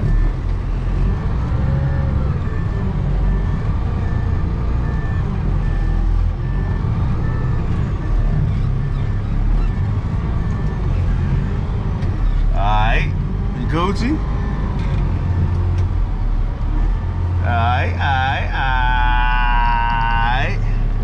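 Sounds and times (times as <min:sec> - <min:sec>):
reversing alarm beeping: 0:00.0 - 0:11.5
diesel engine rumbling: 0:00.0 - 0:21.0.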